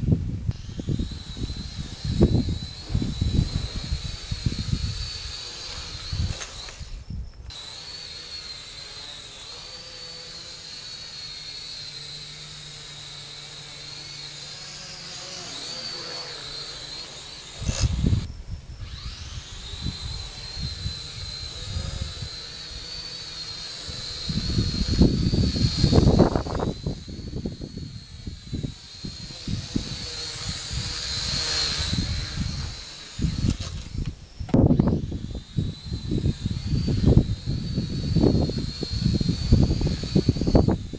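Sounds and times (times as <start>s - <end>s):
wind buffeting microphone: 0.0s - 7.6s, 17.6s - 22.9s, 23.8s - 40.9s
small drone motors whining: 0.0s - 40.9s.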